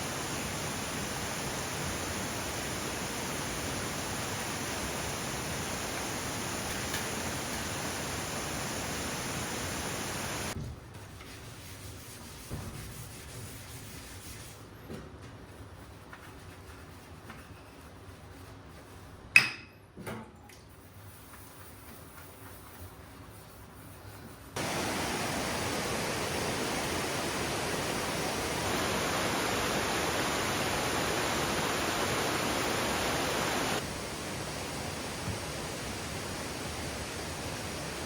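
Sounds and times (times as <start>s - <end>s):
stream rushing: 0.0s - 10.6s, 24.6s - 38.0s.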